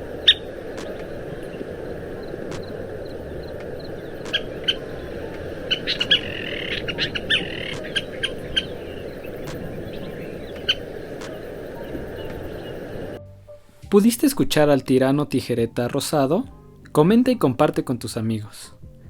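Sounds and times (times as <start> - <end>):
bird calling sharp notes: 0.0 - 13.2
steady low background noise: 0.0 - 19.0.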